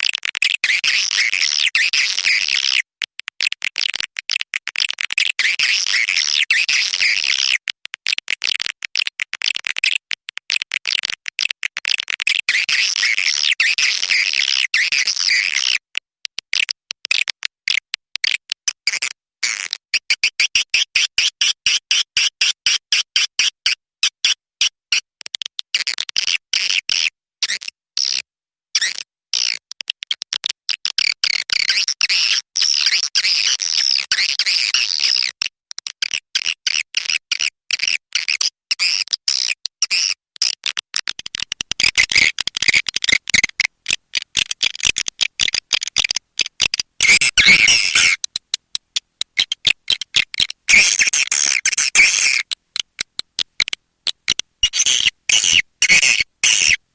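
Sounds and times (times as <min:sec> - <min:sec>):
swiftlet chirps and twitters: 0:41.8 - 0:48.6, 0:49.3 - 0:56.8.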